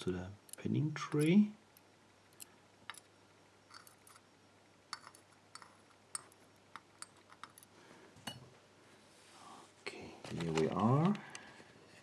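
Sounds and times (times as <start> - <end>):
small pins clicking and clinking: 0.5 - 3.1, 3.7 - 4.3, 4.9 - 7.7.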